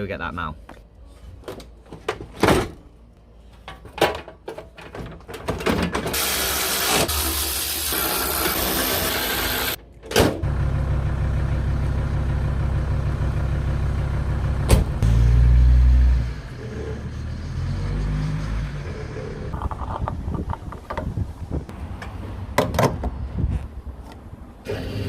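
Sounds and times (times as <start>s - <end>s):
diesel engine low rumble: 9.8s - 25.0s.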